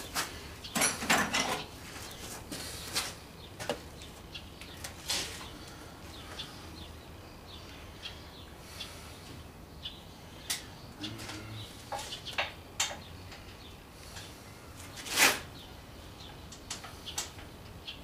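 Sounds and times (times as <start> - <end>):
loud scrape: 15.0 - 15.5.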